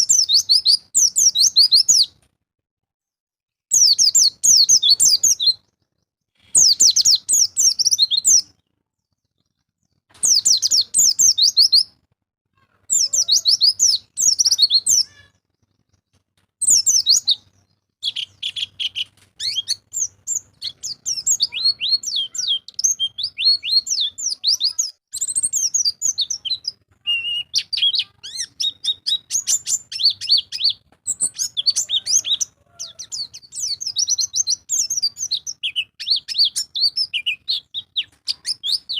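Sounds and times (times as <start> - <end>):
bird twittering song: 0.0 - 2.2, 3.7 - 12.0, 12.9 - 38.9.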